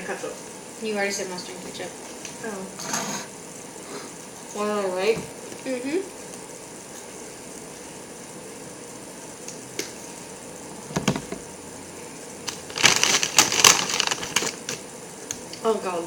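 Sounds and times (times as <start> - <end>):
snack packaging crackling: 12.4 - 15.4.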